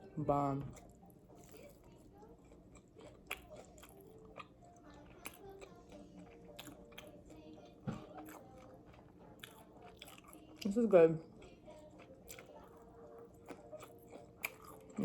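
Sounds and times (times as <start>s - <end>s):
chewing crispy chicken: 0.7s - 15.0s.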